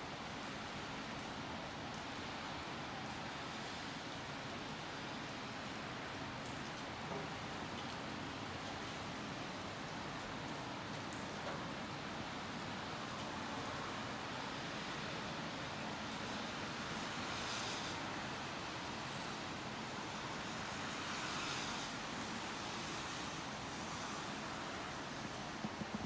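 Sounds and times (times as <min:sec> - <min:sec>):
steady rain falling: 0:00.0 - 0:26.0.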